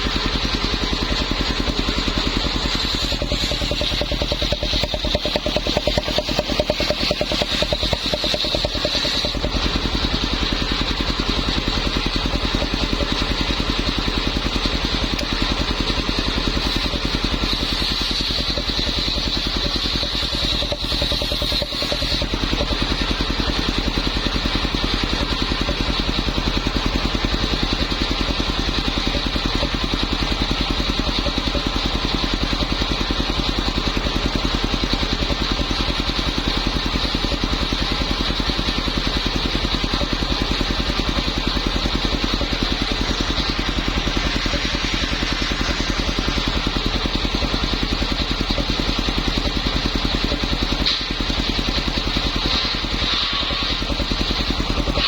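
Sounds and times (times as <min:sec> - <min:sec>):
circular saw whine: 0:00.0 - 0:31.6, 0:34.7 - 0:55.0
small engine running: 0:00.0 - 0:55.0.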